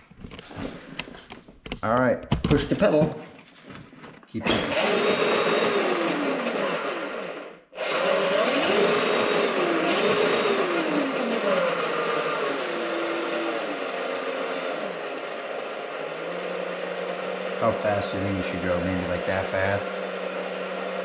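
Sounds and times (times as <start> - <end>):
electric motor whining: 4.4 - 21.0.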